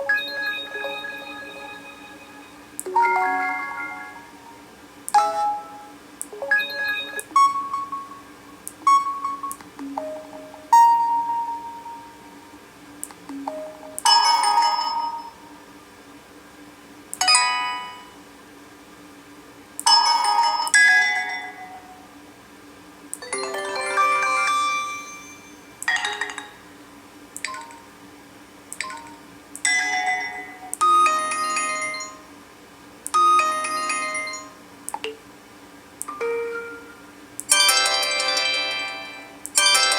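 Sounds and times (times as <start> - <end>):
phone notification chimes: 0.0 - 4.3, 8.9 - 12.2, 13.3 - 15.4, 23.2 - 26.6.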